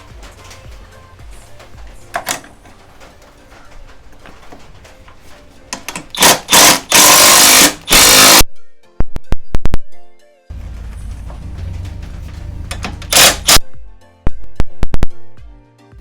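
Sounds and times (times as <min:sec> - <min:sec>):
power drill running: 0:06.1 - 0:08.4, 0:12.8 - 0:13.6.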